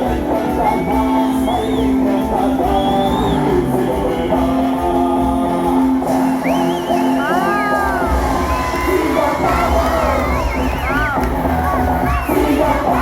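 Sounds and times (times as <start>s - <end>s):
song with singing: 0.0s - 13.0s
high shouts or whistles: 0.8s - 3.8s, 6.1s - 13.0s.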